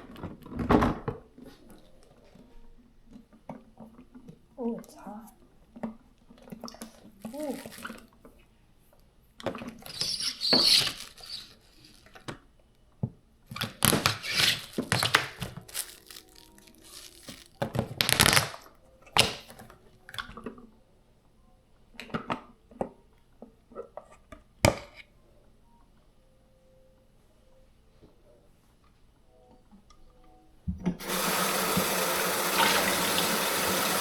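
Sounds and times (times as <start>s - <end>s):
food and utensils clattering: 13.6s - 18.5s.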